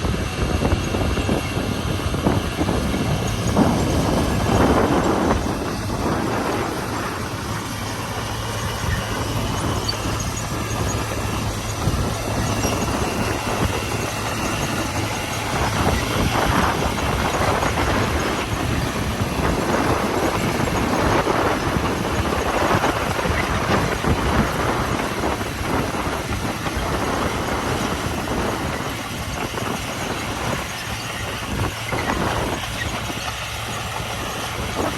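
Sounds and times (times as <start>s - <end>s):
bulldozer diesel engine humming: 0.0s - 34.9s.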